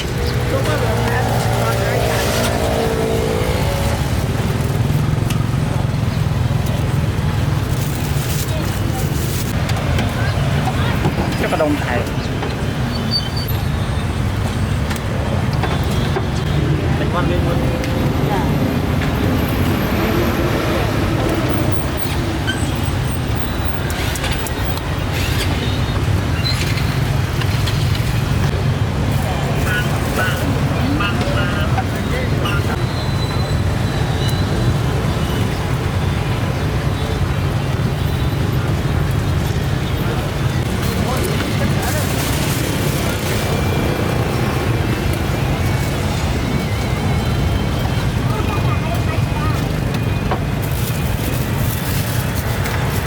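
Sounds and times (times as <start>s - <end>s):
road traffic rumble: 0.0s - 53.0s.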